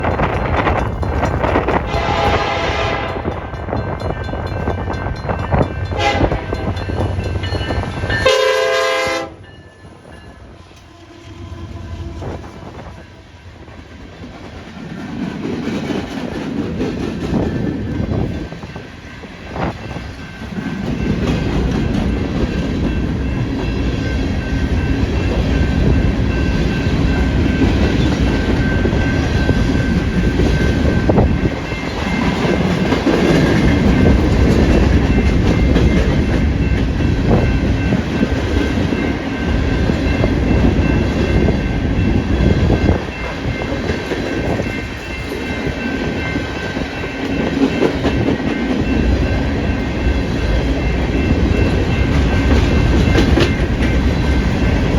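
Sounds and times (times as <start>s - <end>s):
wind buffeting microphone: 0.0s - 8.4s, 11.2s - 54.9s
train wheels clattering over rail joints: 51.5s - 54.6s.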